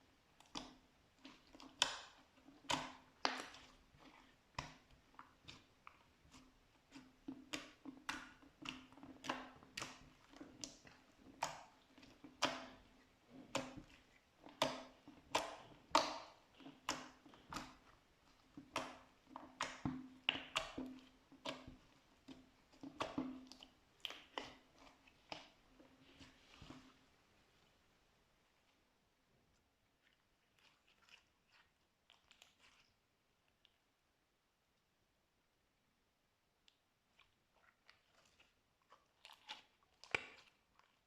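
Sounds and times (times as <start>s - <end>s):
slime squishing with sticky pops: 0.1s - 27.0s, 36.7s - 41.0s.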